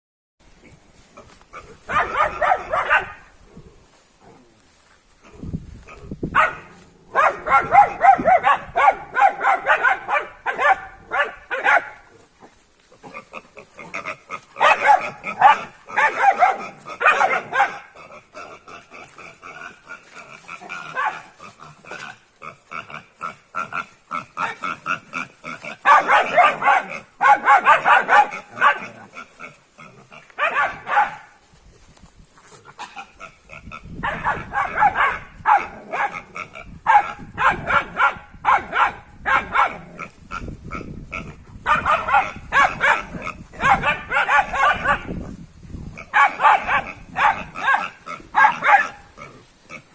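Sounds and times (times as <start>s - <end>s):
puppies yapping and growling: 41.7s - 45.2s.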